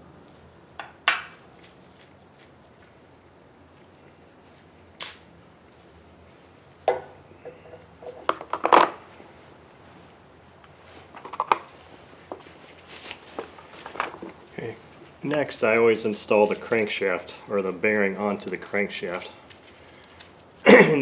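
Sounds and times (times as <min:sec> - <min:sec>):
metal parts and tools clinking: 0:05.0 - 0:05.4, 0:15.9 - 0:17.4.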